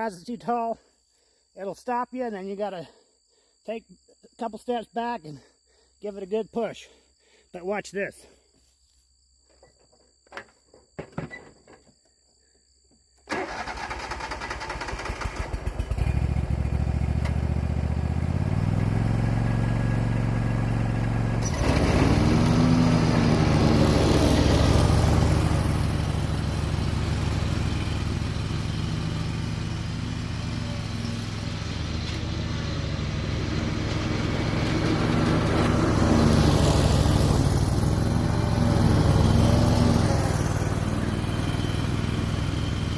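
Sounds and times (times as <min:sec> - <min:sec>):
small engine running: 0:13.3 - 0:42.9.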